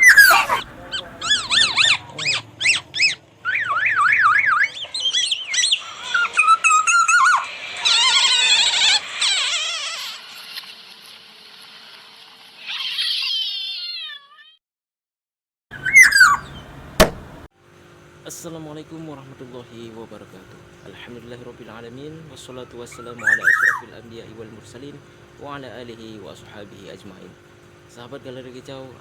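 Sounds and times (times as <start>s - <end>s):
oriole whistling calls: 0.0s - 8.0s, 15.7s - 17.4s, 22.4s - 24.0s.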